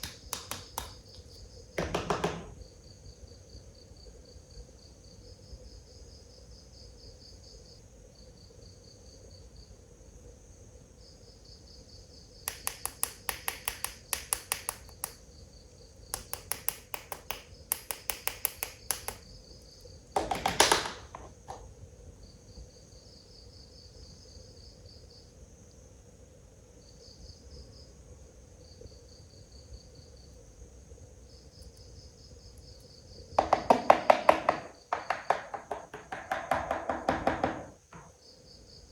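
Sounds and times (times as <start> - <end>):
rapid sharp clicking: 0.0 - 1.3, 12.5 - 15.2, 16.2 - 19.2
crickets chirping: 0.0 - 38.9.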